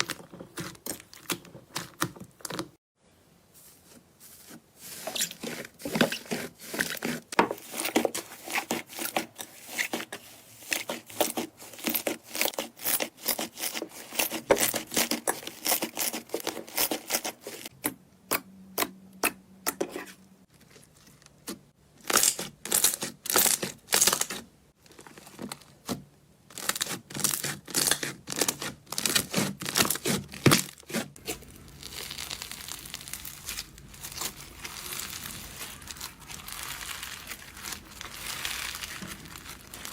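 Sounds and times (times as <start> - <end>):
slime crackling and popping: 31.2 - 39.9
slime crinkling softly: 31.2 - 39.9.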